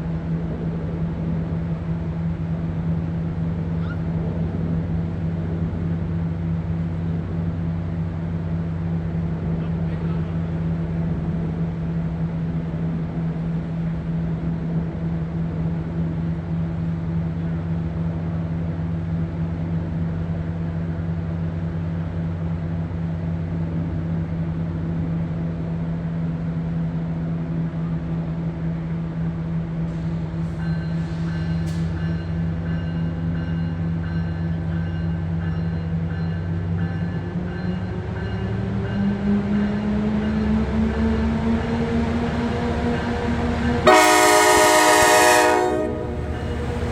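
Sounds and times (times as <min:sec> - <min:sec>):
locomotive diesel engines running: 0:39.3 - 0:46.9.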